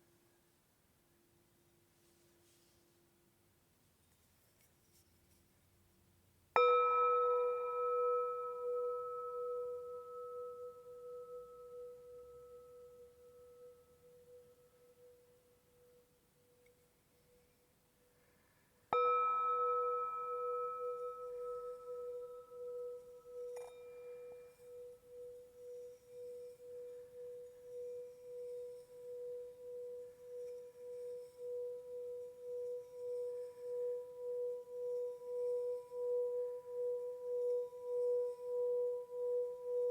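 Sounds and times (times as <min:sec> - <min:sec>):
singing bowl ringing: 0:06.6 - 0:15.6, 0:18.9 - 0:39.9.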